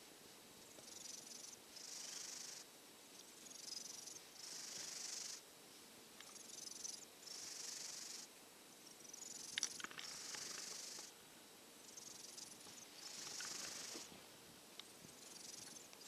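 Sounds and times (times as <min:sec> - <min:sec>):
kitten snoring faintly: 0:00.8 - 0:02.7, 0:03.5 - 0:05.4, 0:06.3 - 0:08.3, 0:09.2 - 0:11.1, 0:12.0 - 0:14.1
small sharp clicks: 0:09.4 - 0:11.1.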